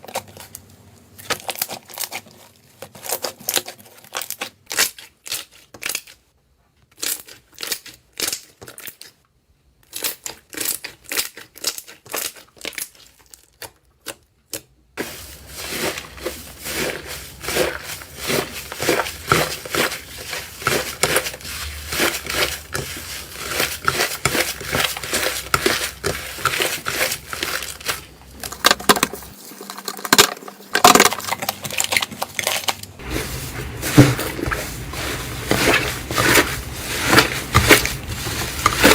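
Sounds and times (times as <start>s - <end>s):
slime crackling and popping: 9.9s - 38.9s.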